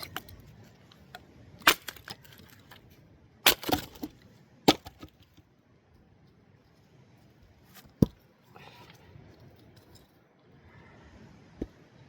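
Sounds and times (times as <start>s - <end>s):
axe chopping firewood: 1.6s - 2.6s, 3.4s - 5.2s
wood splitting crackle: 1.6s - 2.8s, 3.4s - 5.3s.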